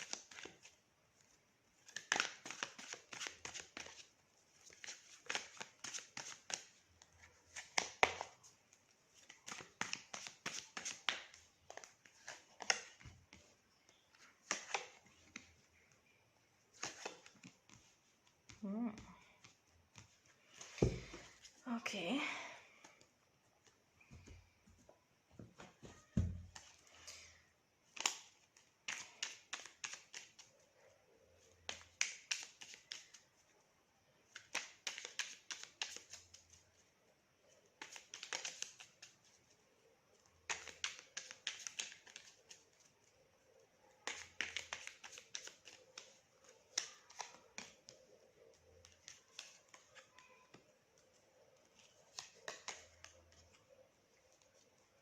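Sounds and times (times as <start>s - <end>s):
cards being shuffled: 0.0s - 0.8s, 1.8s - 16.0s, 16.7s - 21.6s, 27.8s - 30.6s, 31.5s - 33.2s, 34.3s - 36.4s, 37.8s - 39.5s, 40.4s - 43.2s, 43.9s - 55.0s.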